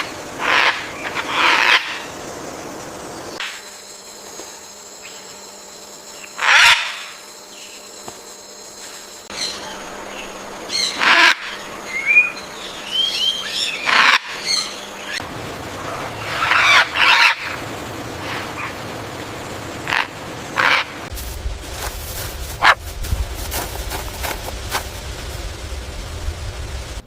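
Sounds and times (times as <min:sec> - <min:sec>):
faint steady hum: 0:00.0 - 0:27.0
macaws squawking: 0:00.4 - 0:02.1, 0:06.4 - 0:07.1, 0:10.7 - 0:12.3, 0:12.9 - 0:15.2, 0:15.8 - 0:17.6, 0:18.2 - 0:18.8, 0:19.8 - 0:21.1, 0:22.5 - 0:22.8.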